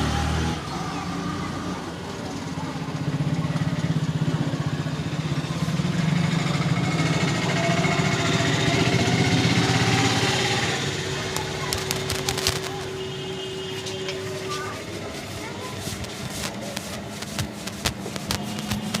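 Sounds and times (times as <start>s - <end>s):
vehicle engine passing by: 0.0s - 11.7s
sharp clicks: 11.3s - 12.9s, 16.0s - 19.0s.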